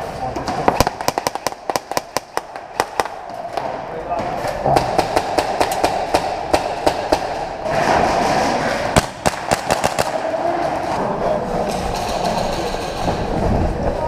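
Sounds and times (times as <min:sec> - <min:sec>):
airsoft guns firing: 0:00.5 - 0:03.8, 0:04.7 - 0:10.7.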